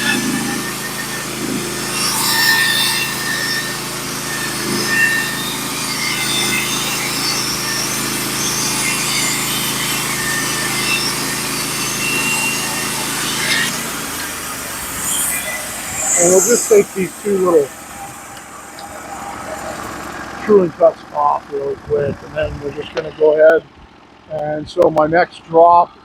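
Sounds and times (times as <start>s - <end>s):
saw blade hissing through wood: 0.0s - 21.7s
sawmill engine running: 0.0s - 26.0s.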